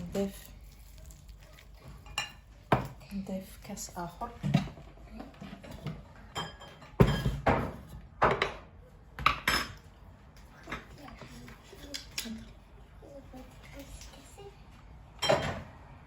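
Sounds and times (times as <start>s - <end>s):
dishes clinking against mixing bowl: 2.0s - 3.1s, 4.4s - 9.9s, 15.2s - 15.7s.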